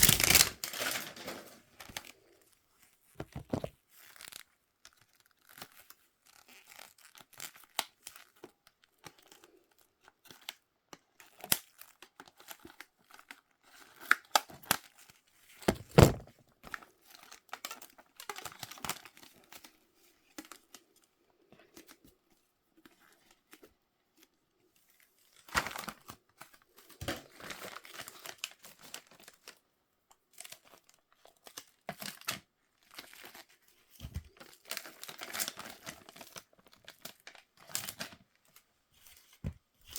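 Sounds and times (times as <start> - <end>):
packaging torn and crinkled: 0.0 - 1.5, 34.7 - 36.4.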